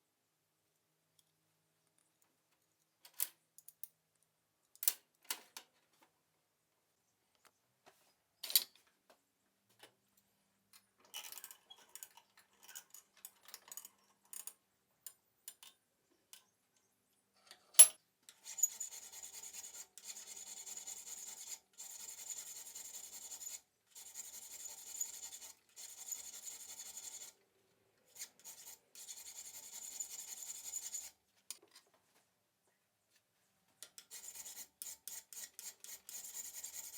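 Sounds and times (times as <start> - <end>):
file rasping on metal: 18.4 - 27.4, 28.2 - 31.2, 34.1 - 36.9.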